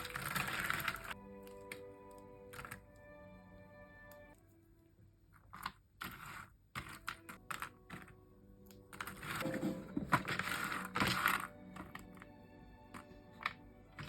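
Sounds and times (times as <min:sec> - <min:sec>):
puzzle pieces clicking and rattling: 0:00.0 - 0:01.2, 0:05.4 - 0:12.2.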